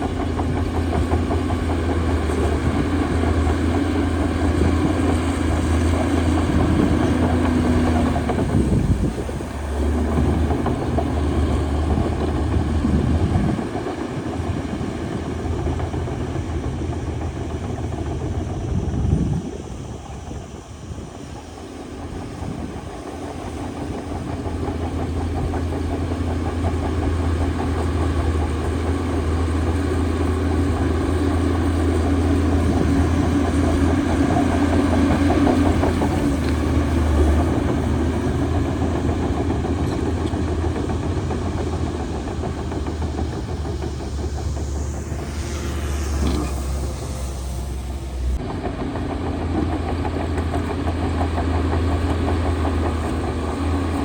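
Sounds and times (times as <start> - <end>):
heavy diesel engine running: 0.0 - 54.0
whining sweep: 40.3 - 49.8.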